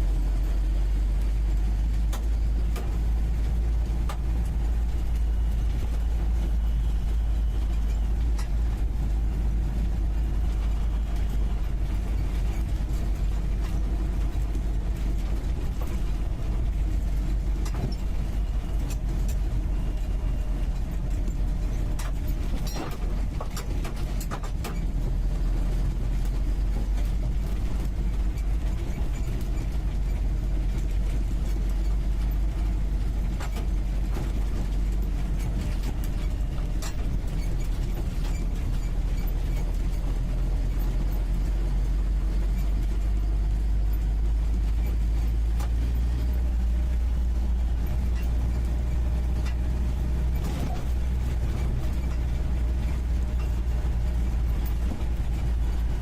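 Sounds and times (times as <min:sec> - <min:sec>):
car engine droning in cabin: 0:00.0 - 0:56.0
short rattles and knocks: 0:01.9 - 0:56.0.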